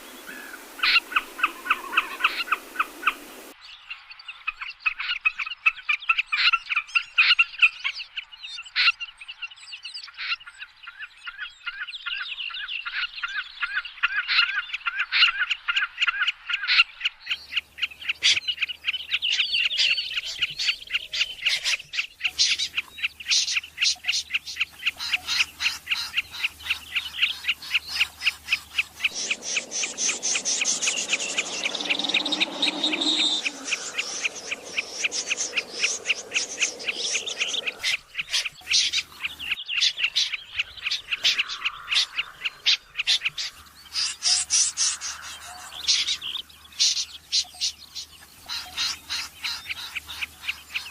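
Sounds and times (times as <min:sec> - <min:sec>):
recorded bird calls: 0:00.0 - 0:50.9
higher-pitched bird call: 0:25.0 - 0:39.0.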